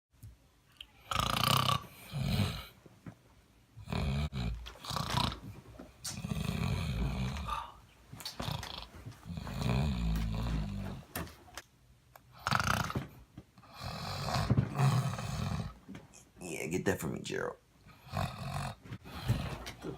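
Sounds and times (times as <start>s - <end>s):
person snoring heavily: 1.0s - 2.8s, 3.8s - 5.5s, 6.1s - 11.0s, 12.3s - 15.8s, 18.0s - 19.7s.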